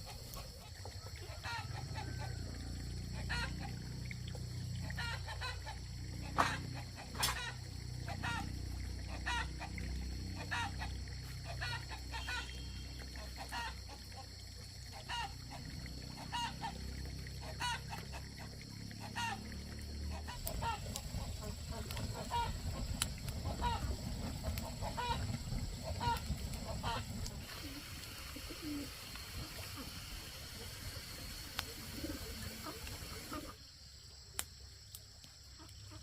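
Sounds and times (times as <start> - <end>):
poultry calling: 0.0 - 3.8, 4.8 - 9.8, 10.4 - 13.8, 20.1 - 27.8
low rumbling background noise: 18.2 - 27.8.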